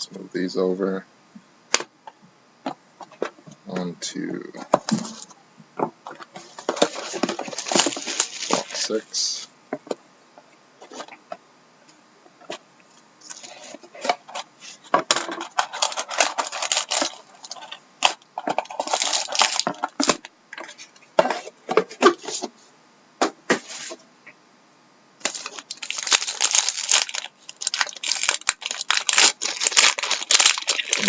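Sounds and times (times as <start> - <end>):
cardboard and card handling: 6.1 - 9.0
plastic wrap crinkling and tearing: 6.7 - 9.0, 15.4 - 20.3, 25.2 - 31.0.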